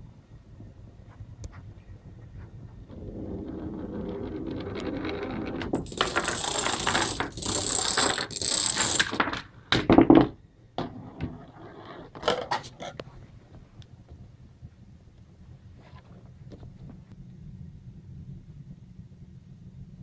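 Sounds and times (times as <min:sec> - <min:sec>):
balls and dominoes clattering: 0:03.3 - 0:10.3.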